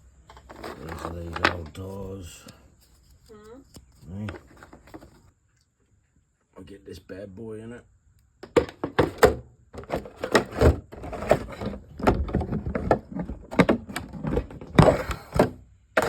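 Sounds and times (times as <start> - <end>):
hard objects knocking and clattering: 8.4 - 16.0.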